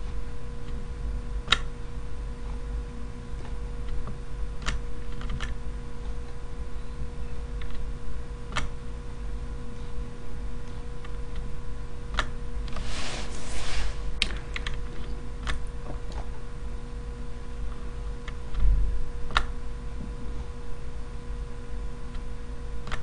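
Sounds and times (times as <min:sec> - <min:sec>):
steady electrical hum: 0:00.0 - 0:23.0
short rustle: 0:12.8 - 0:14.2.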